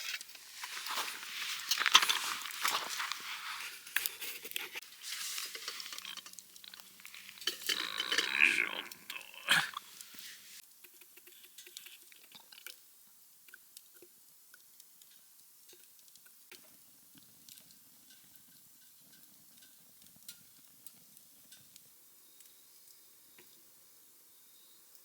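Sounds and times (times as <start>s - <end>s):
faint clicks and ticks: 3.8s - 9.2s, 10.0s - 23.7s.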